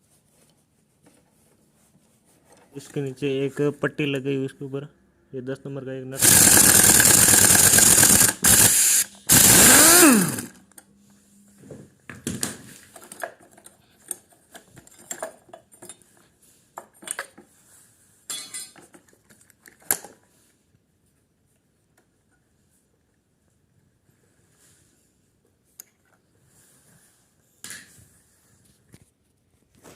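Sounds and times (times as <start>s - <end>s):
power driver whirring: 6.2s - 10.6s.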